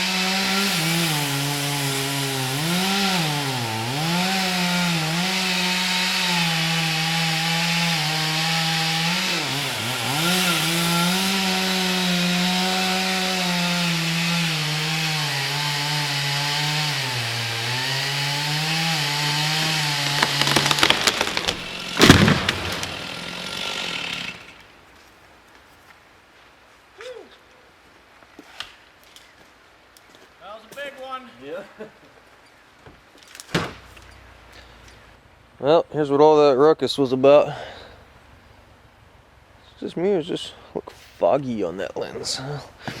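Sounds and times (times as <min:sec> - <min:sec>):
chainsaw cutting: 0:00.0 - 0:24.7
wood cracking: 0:00.0 - 0:24.7, 0:33.1 - 0:35.0
falling timber crash: 0:18.7 - 0:24.4.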